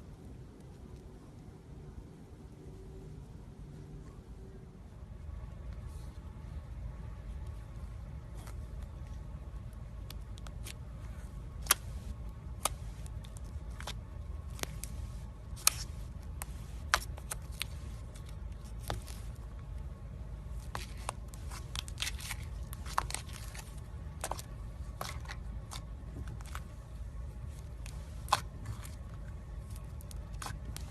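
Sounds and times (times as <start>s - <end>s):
steady low hum: 0.0s - 30.9s
slime crackling and popping: 27.4s - 30.9s.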